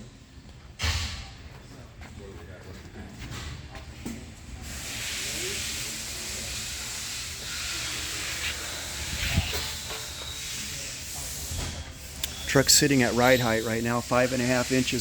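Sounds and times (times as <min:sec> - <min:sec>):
air hissing from suspension: 0:04.6 - 0:15.0.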